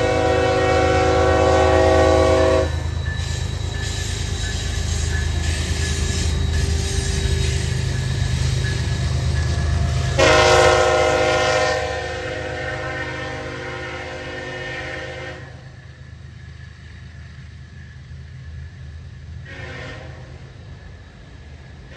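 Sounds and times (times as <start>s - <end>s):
locomotive air horn blast: 0.0s - 2.7s, 10.2s - 15.6s, 19.4s - 20.4s.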